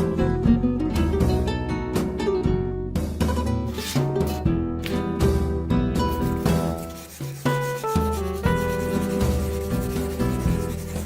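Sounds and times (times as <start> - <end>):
background music: 0.0 - 11.0
rubbing scraping noise: 3.7 - 5.0, 6.1 - 11.0.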